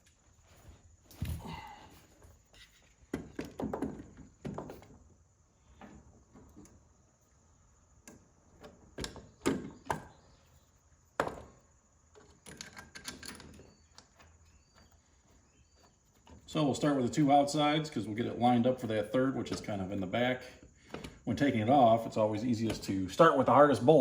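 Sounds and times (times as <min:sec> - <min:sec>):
metal parts and tools clunking: 0:11.2 - 0:15.0, 0:20.8 - 0:23.2.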